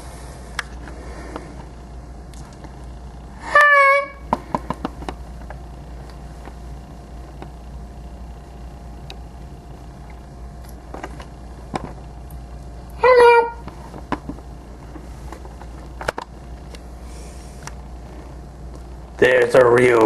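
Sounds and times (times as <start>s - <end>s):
steady low hum: 0.0s - 20.0s
high-pitched cry: 3.4s - 4.2s, 13.0s - 13.6s.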